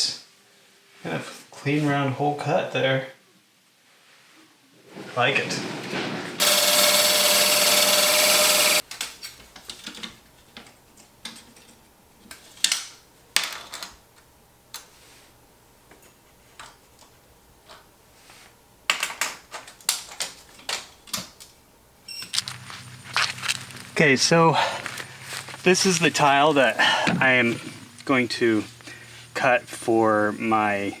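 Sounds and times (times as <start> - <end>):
power drill whining: 6.4 - 8.8.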